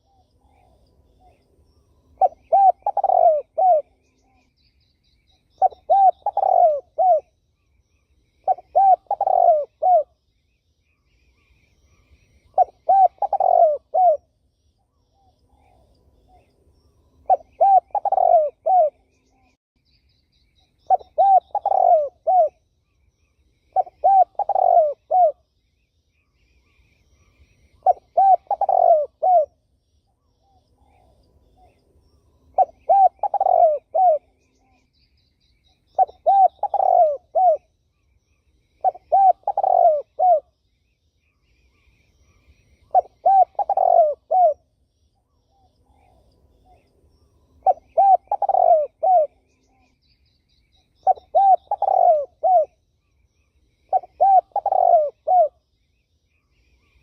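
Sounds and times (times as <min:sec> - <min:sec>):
small birds chirping: 0:00.0 - 0:57.0
dove cooing: 0:02.2 - 0:04.2, 0:05.6 - 0:07.3, 0:08.4 - 0:10.1, 0:12.5 - 0:14.3, 0:17.2 - 0:19.3, 0:20.9 - 0:22.6, 0:23.7 - 0:25.4, 0:27.8 - 0:29.6, 0:32.5 - 0:34.7, 0:35.9 - 0:37.7, 0:38.8 - 0:40.5, 0:42.2 - 0:44.6, 0:47.6 - 0:49.9, 0:51.0 - 0:52.8, 0:53.9 - 0:55.6.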